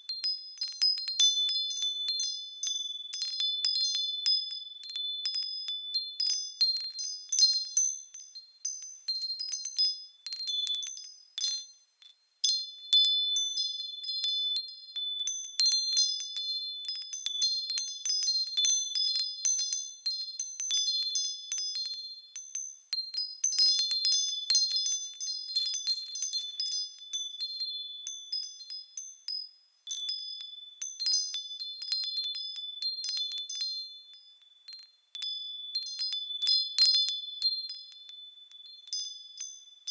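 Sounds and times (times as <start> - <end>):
wind chimes ringing: 0.0 - 11.8, 22.6 - 39.9.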